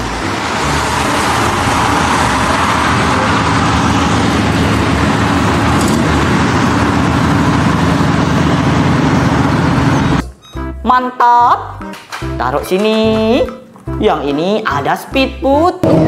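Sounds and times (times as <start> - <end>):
road and traffic noise: 0.0 - 10.7
minibus engine running: 0.0 - 10.8.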